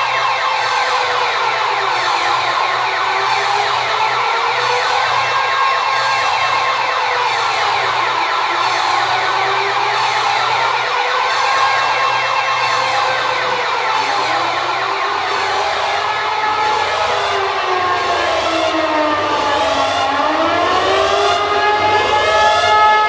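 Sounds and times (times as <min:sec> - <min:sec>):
warbling electronic alarm: 0:00.0 - 0:23.0.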